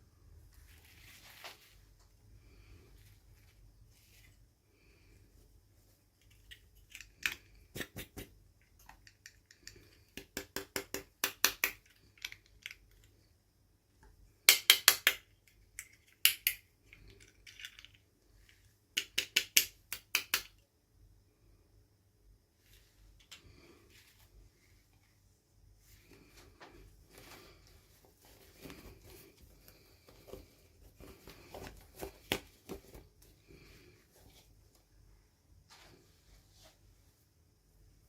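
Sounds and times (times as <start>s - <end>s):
plastic toy pieces clicking: 8.7s - 13.1s.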